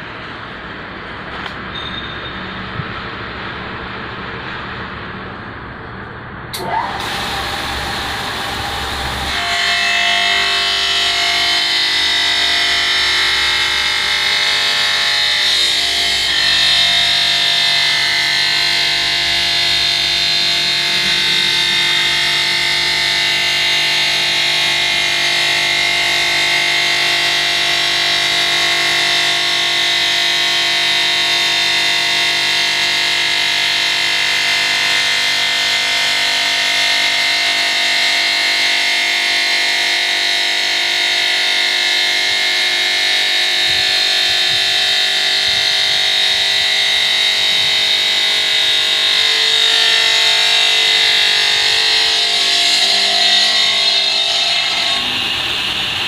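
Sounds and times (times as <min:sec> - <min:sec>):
stone cutting machine whine: 0:06.6 - 0:56.0.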